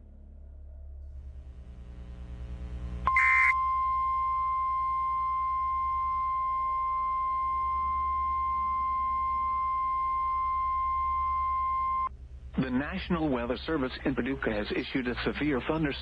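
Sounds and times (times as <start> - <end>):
burst of static: 1.2 - 3.6.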